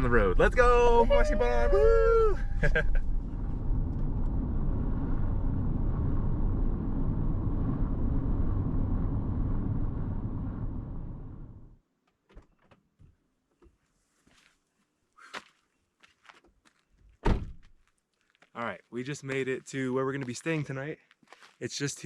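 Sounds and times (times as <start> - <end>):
car engine and tyre rumble: 0.0 - 11.8.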